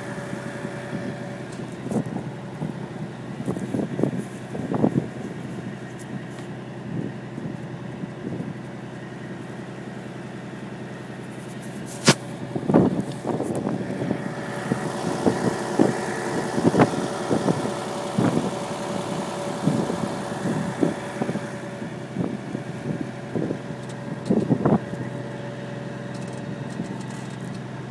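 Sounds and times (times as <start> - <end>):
vehicle engine idling: 0.0 - 27.9
sharp click: 12.0 - 12.3.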